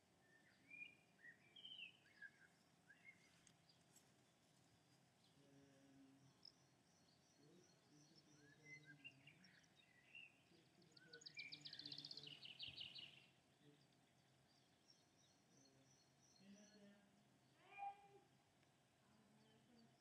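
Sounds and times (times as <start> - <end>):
faint birdsong chirps: 0.0 - 20.0
faint low hum: 0.0 - 20.0
bird trill: 0.3 - 3.4, 6.3 - 16.8.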